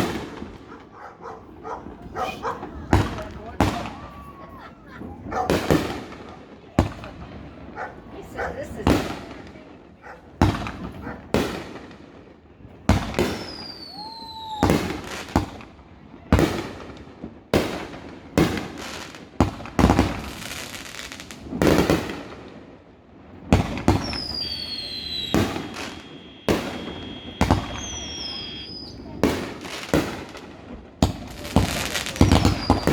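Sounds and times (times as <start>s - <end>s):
fireworks bursting: 0.0s - 32.9s
falling whistles: 13.4s - 14.7s, 24.0s - 29.0s, 32.4s - 32.9s.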